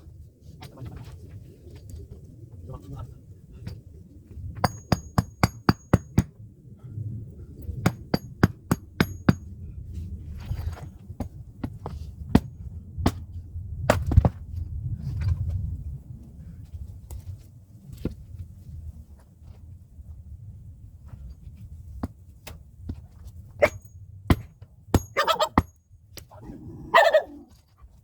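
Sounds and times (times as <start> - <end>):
axe striking firewood: 4.6 - 6.3, 7.9 - 9.5, 13.1 - 14.4, 23.6 - 25.8.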